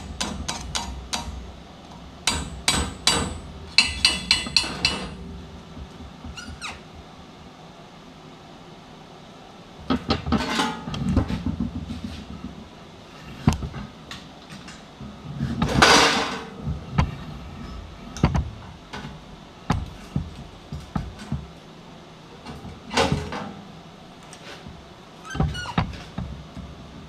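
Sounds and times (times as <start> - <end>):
metal knocks and clanks: 2.2 - 6.7, 15.5 - 21.5
noisy scrape or hiss: 10.0 - 27.0.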